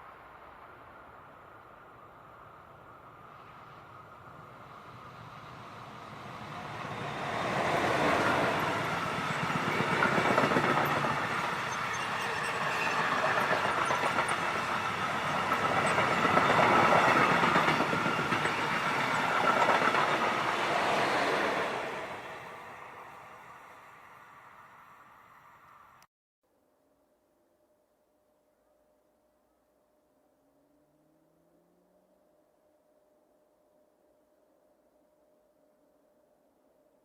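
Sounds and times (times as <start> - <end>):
train passing: 0.0 - 26.1.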